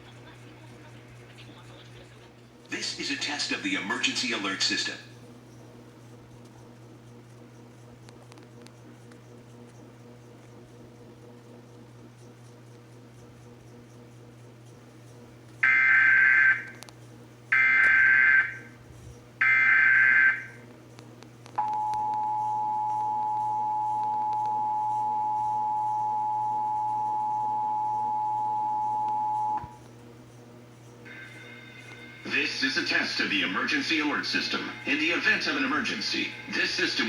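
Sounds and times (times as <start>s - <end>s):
two-tone attention signal: 21.6s - 29.7s.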